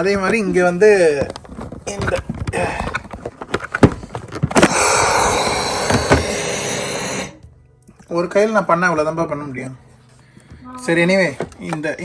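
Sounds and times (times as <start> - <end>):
steady air hiss: 4.6 - 7.4.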